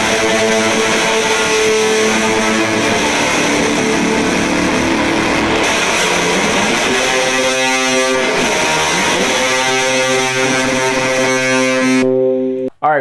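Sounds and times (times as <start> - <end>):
distorted electric guitar chord: 0.0 - 12.7.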